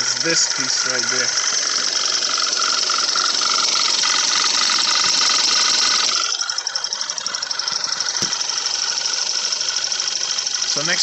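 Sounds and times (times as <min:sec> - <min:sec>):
car engine idling: 0:00.0 - 0:11.0
fuel injectors ticking: 0:00.0 - 0:11.0
rapid valve clicking: 0:00.0 - 0:11.0
short thump: 0:08.2 - 0:08.4.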